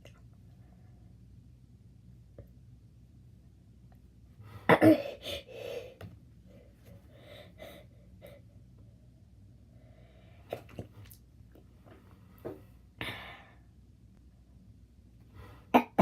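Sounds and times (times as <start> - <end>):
person sneezing: 4.6 - 5.9, 15.7 - 16.0.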